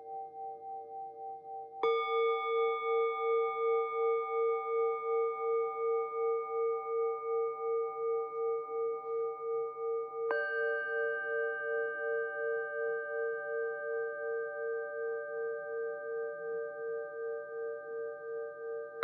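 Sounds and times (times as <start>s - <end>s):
bowl bells ringing: 0.0s - 19.0s.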